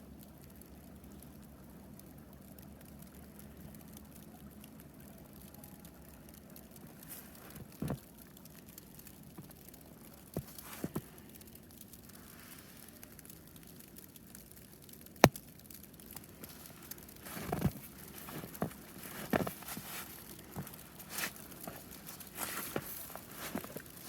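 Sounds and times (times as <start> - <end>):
footsteps crunching in deep snow: 10.4 - 11.0, 16.4 - 24.0.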